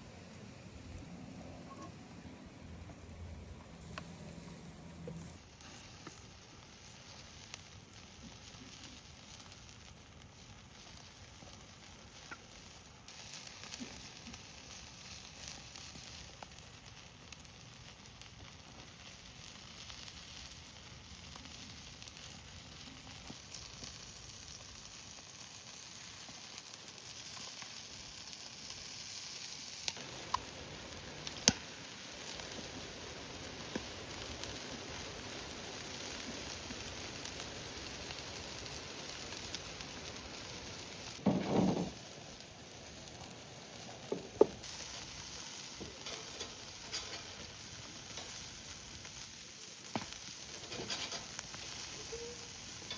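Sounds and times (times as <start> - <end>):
food sizzling over fire: 0.0 - 52.9
sharp pops: 31.2 - 31.8.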